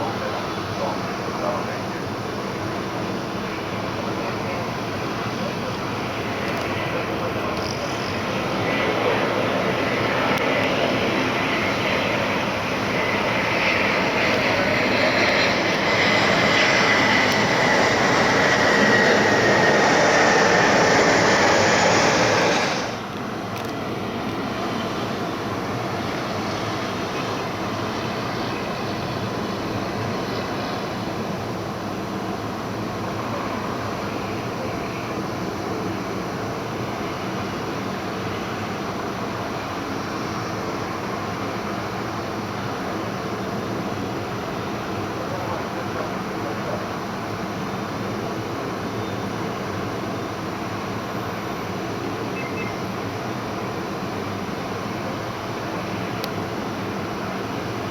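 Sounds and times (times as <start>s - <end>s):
airliner engine whine: 0.0s - 57.9s
engine rumble: 5.4s - 23.2s.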